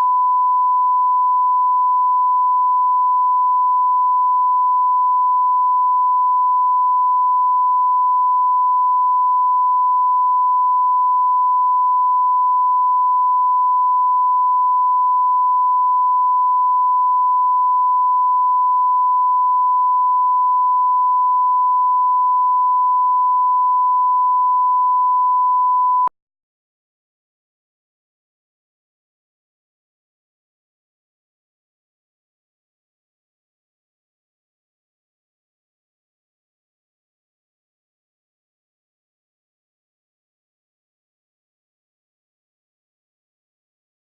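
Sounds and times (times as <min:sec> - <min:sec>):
sine-wave test tone: 0:00.0 - 0:26.2.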